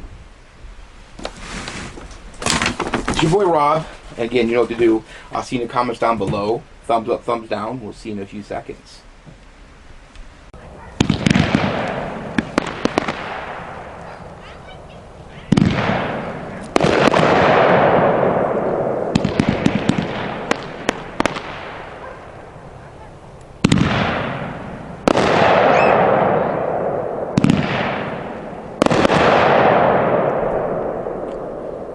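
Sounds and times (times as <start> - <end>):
firework bursts with hiss: 1.2 - 2.2, 11.0 - 30.2
firework crackling: 10.5 - 31.9
firework shots thumping: 11.0 - 14.4, 15.4 - 22.5, 23.6 - 31.9.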